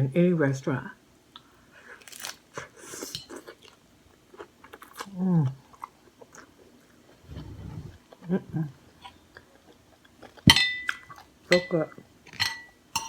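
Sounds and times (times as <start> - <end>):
crunchy chewing of taco shell: 1.4 - 12.4
short vocal sound: 7.2 - 8.8.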